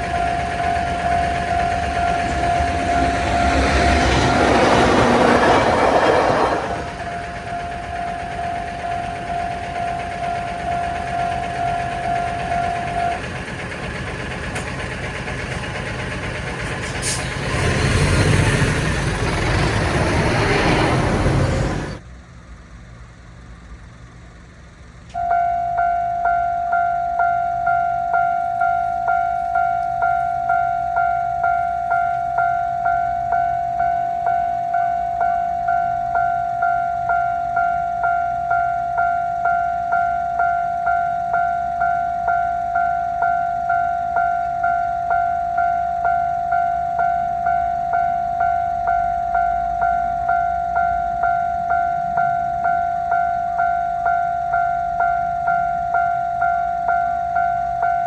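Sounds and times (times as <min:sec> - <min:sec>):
level crossing warning bell: 0:00.0 - 0:22.0, 0:25.2 - 0:58.0
train wheels rumbling on rail: 0:00.0 - 0:22.0.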